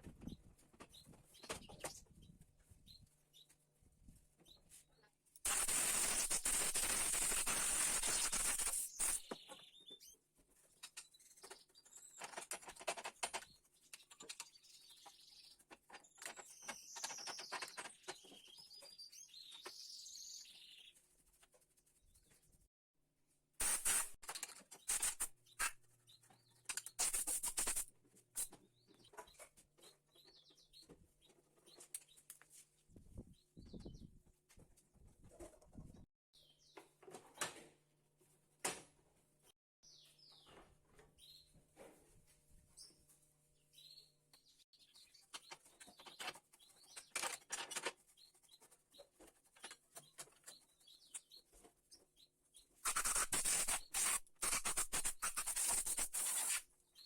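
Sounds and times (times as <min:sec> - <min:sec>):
compressed air blowing: 0:05.5 - 0:09.2, 0:23.6 - 0:24.2.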